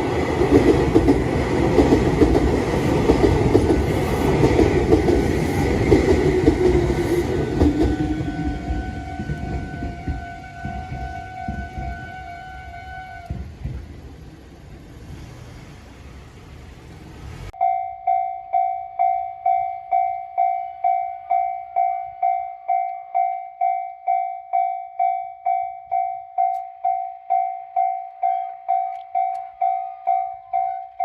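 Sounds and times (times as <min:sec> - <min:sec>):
train rumbling past: 0:00.0 - 0:17.6
level-crossing alarm ringing: 0:17.6 - 0:31.0.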